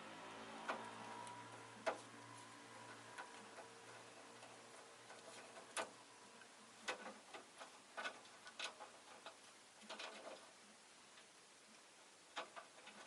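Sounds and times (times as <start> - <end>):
bird pecking in cage: 0.6 - 10.6.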